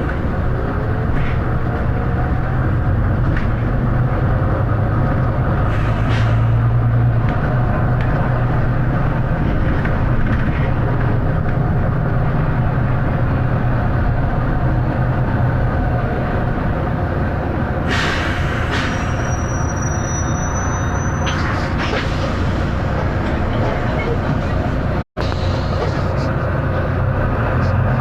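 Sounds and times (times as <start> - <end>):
diesel bus engine running: 0.0 - 28.0
air brake hiss: 5.7 - 6.6, 17.9 - 19.2.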